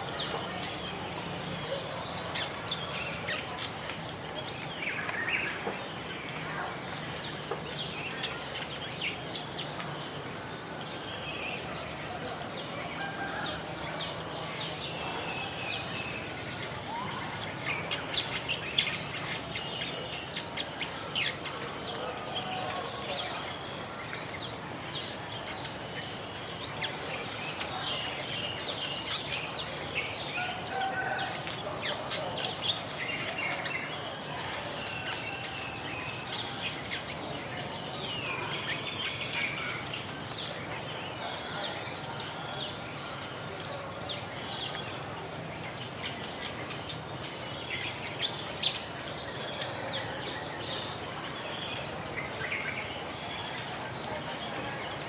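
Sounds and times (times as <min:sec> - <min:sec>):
outdoor background hiss: 0:00.0 - 0:55.0
small birds chirping: 0:00.0 - 0:55.0.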